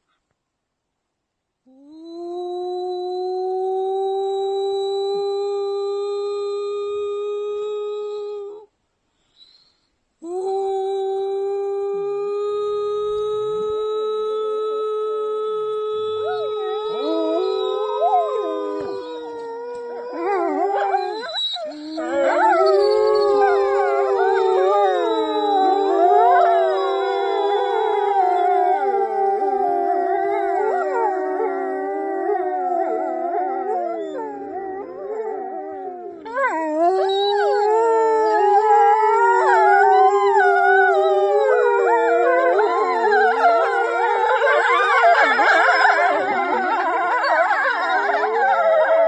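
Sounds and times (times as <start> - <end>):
pack of canids howling: 10.2 - 49.0.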